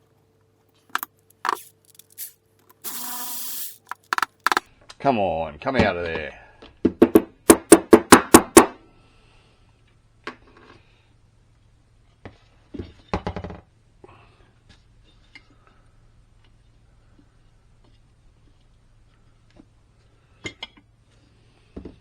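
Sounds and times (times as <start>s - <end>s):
metal parts clunking and clicking: 0.9s - 4.6s
sharp knocks on metal parts: 1.0s - 4.6s, 7.1s - 8.7s.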